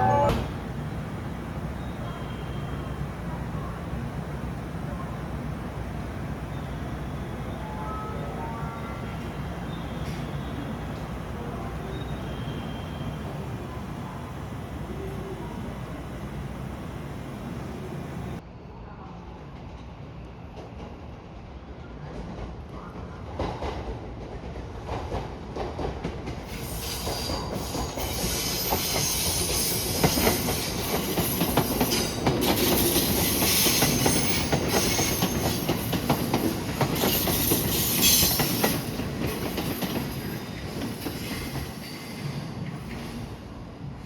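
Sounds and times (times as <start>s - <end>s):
train wheels squealing: 6.5s - 13.5s, 26.5s - 43.4s
train wheels clacking on rails: 22.1s - 43.4s.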